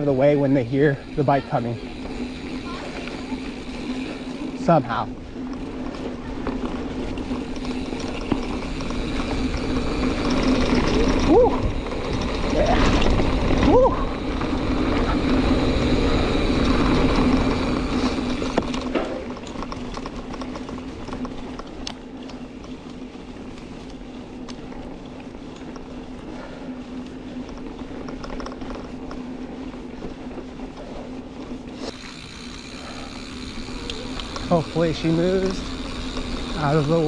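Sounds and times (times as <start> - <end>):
freehub ratchet buzzing: 0.0 - 5.7, 6.8 - 21.4, 31.8 - 37.0
tyre and wind noise: 1.0 - 36.8.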